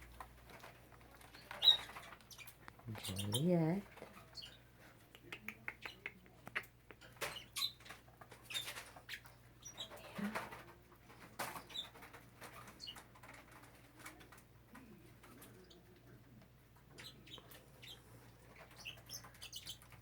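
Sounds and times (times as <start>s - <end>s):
bird chirps: 1.4s - 3.5s.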